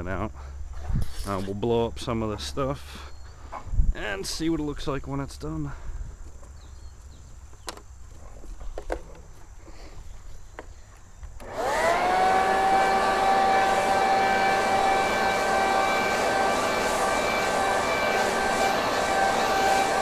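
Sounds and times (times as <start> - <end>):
leaf blower whining: 11.4 - 20.0.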